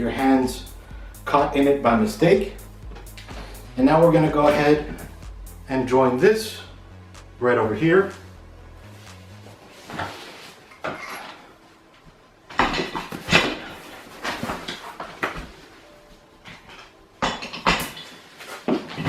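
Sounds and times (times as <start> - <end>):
chair parts knocking and rattling: 12.5 - 15.5.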